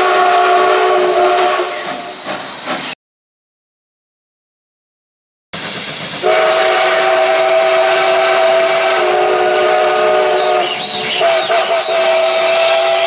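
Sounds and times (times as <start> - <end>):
steam hissing: 0.3 - 3.0, 5.6 - 13.0
steam whistle chord: 6.2 - 13.0.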